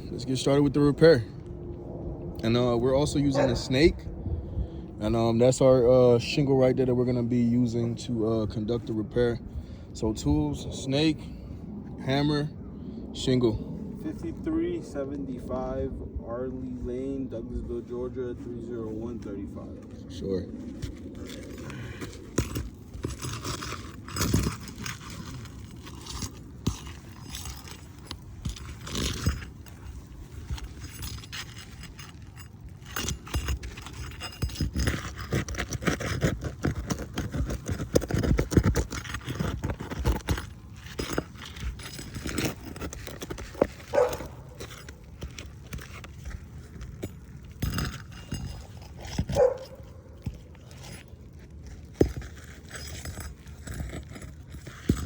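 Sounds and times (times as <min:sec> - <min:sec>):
footsteps on shingles: 0:16.7 - 0:55.0
scraping and knocking on shingle roof: 0:20.8 - 0:55.0.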